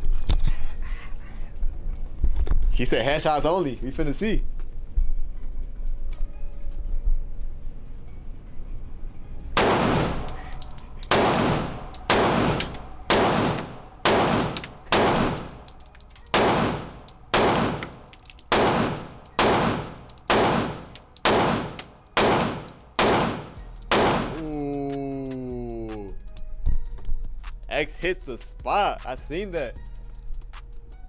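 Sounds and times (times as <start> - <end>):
handgun shots with echo: 9.6 - 24.6.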